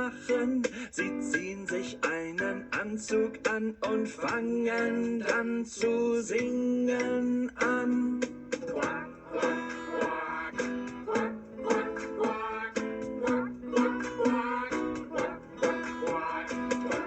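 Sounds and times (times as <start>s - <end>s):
plucked string instrument: 6.9s - 17.0s.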